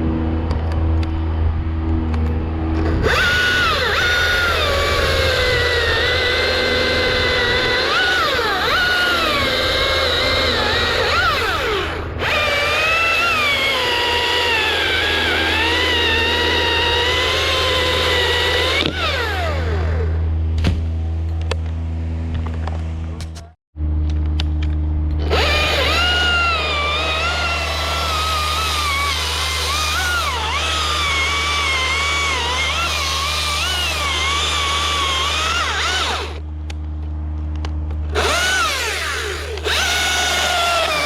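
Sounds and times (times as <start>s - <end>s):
chainsaw cutting wood: 2.8s - 20.9s, 25.2s - 36.5s, 38.1s - 41.0s.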